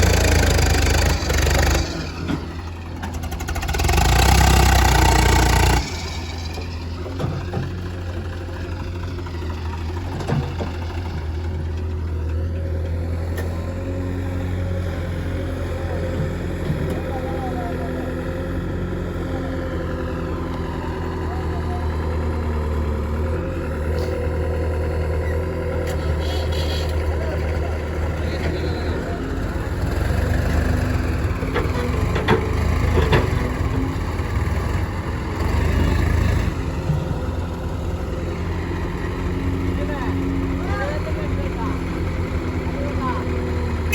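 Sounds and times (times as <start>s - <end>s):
heavy diesel engine running: 0.0s - 43.9s.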